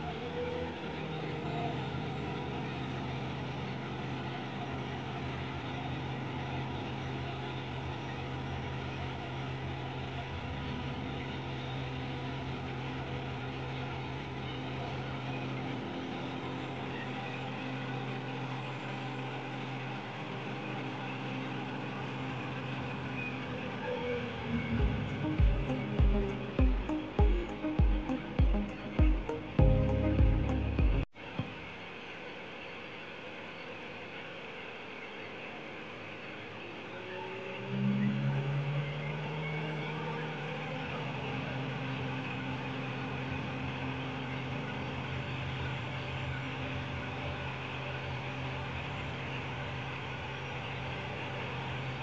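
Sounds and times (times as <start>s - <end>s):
diesel engine running: 24.2s - 31.1s.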